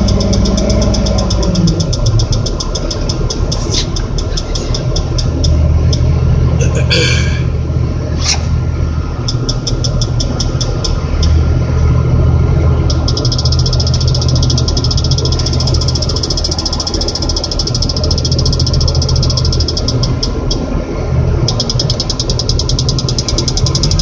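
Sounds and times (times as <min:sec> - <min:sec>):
warning beeper: 0:00.0 - 0:05.4, 0:12.9 - 0:20.6, 0:21.5 - 0:24.0
crane engine running: 0:00.0 - 0:24.0.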